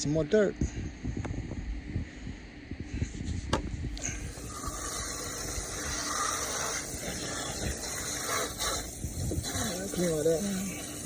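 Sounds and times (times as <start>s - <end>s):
water running and spraying: 4.0s - 11.0s.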